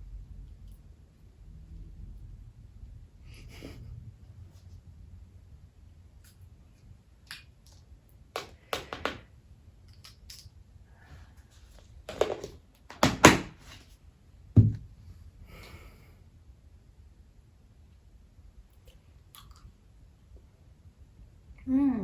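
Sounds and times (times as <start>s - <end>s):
sharp knocks and clicks: 8.4s - 9.2s
dull knock: 12.1s - 13.6s, 14.6s - 14.9s.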